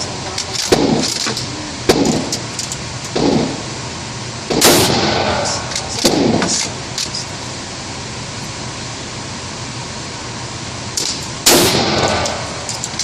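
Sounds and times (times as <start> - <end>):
gunshots with echo: 4.5 - 6.6, 11.5 - 12.6.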